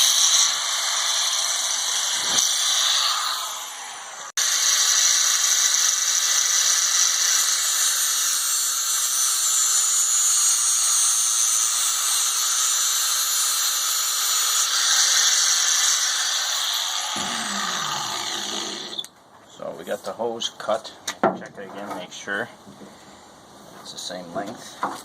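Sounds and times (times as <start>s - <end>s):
power cutting tool whining: 0.0s - 19.1s.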